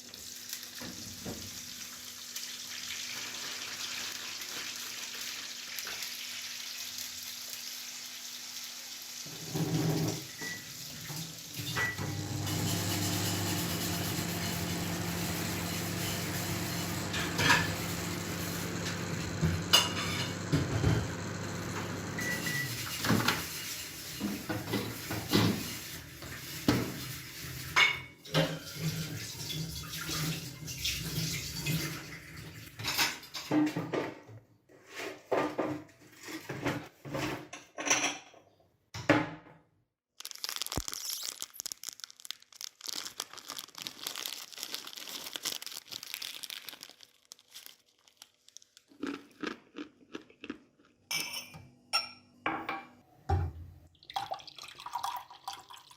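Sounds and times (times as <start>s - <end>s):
dishes and cutlery clinking: 51.1s - 52.9s.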